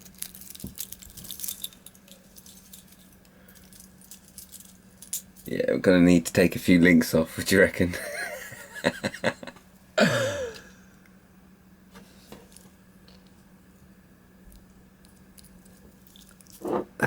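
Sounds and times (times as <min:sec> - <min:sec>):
steady low hum: 0:00.0 - 0:17.0
person humming: 0:10.0 - 0:10.8.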